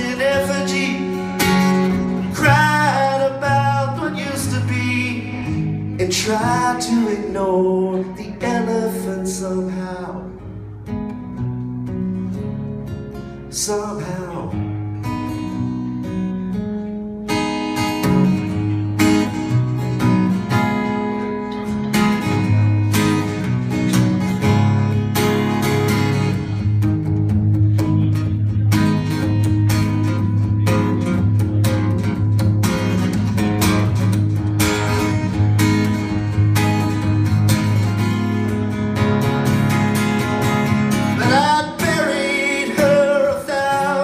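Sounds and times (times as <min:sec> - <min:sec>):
acoustic guitar strumming: 0:00.0 - 0:44.0
person singing: 0:41.2 - 0:44.0.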